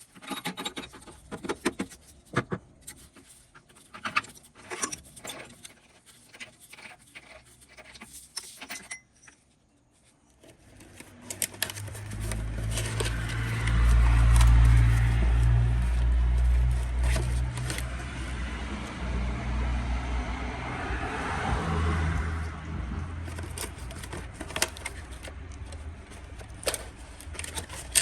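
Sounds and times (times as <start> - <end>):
metallic clicks and clatter: 0.0 - 9.4, 10.4 - 18.4, 23.2 - 28.0
car engine running: 11.4 - 20.4.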